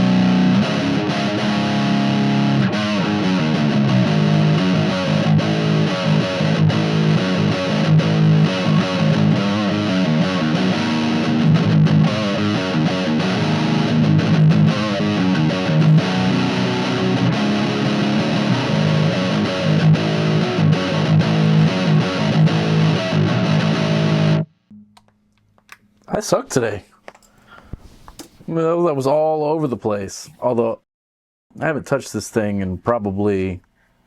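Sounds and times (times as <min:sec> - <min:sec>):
distorted electric guitar riff: 0:00.0 - 0:25.0.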